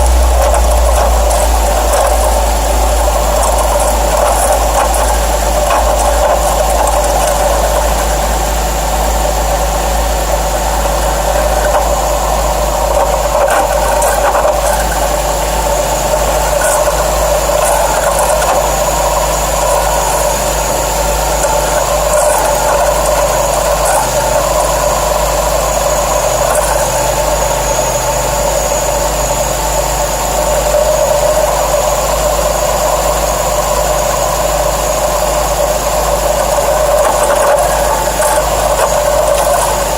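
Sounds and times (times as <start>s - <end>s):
car engine idling: 0.0s - 39.9s
mechanical noise under the hood: 0.0s - 39.9s.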